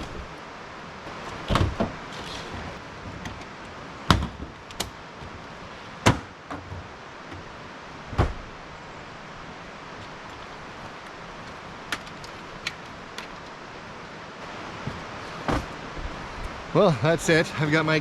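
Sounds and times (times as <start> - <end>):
steady background hiss: 0.0 - 18.0
camping gear knocks and thumps: 1.1 - 5.4, 6.0 - 8.4, 14.8 - 16.1.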